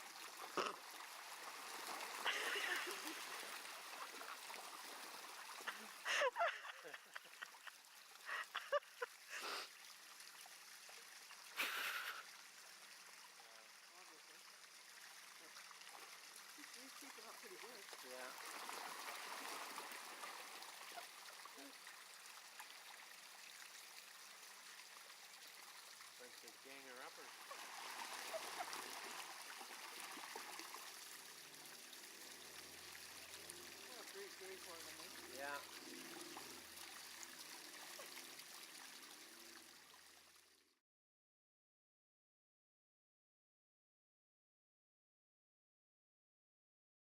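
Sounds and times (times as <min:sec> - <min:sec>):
ducklings splashing water: 0:00.0 - 0:09.2, 0:15.9 - 0:23.9, 0:24.6 - 0:39.0.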